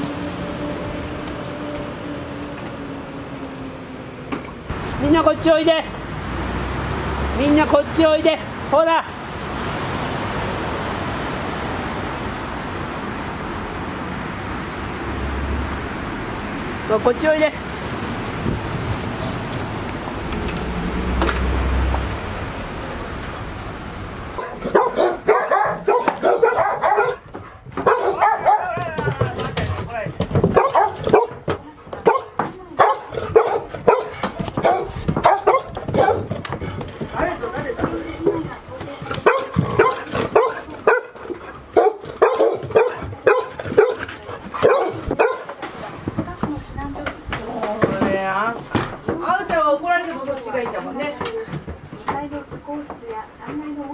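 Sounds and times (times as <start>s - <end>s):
puppies barking and whining: 24.4s - 29.0s, 32.0s - 36.4s.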